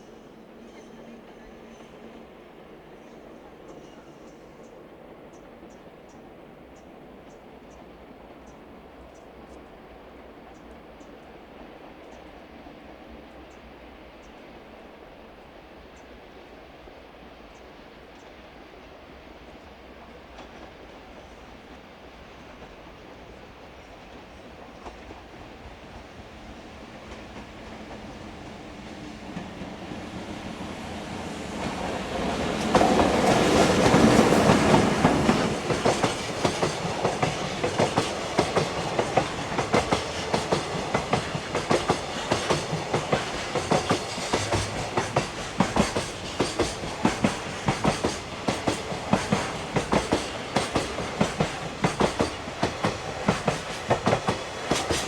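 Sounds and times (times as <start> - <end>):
electric train passing: 0.0 - 55.0
train wheels clattering on rail joints: 22.5 - 55.0.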